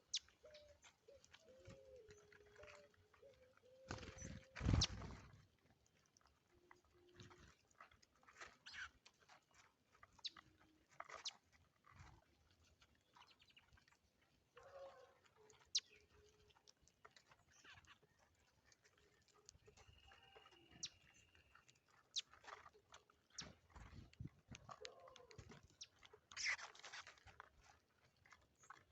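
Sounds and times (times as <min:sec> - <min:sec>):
longer bird calls: 0:00.0 - 0:05.2
birds chirping: 0:00.0 - 0:05.3, 0:14.6 - 0:16.7, 0:17.3 - 0:26.7.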